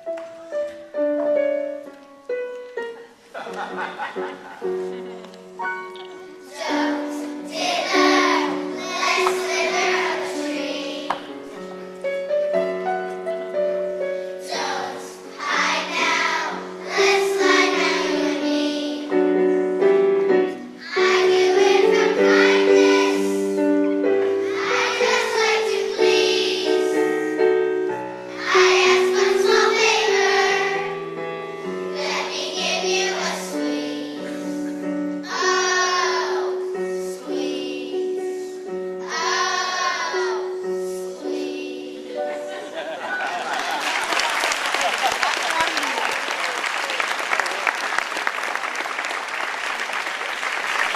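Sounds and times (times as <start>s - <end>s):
held instrumental notes: 0.0s - 43.0s
children singing: 6.4s - 11.4s, 14.4s - 19.3s, 20.8s - 23.7s, 24.4s - 27.3s, 28.3s - 31.0s, 31.9s - 42.9s.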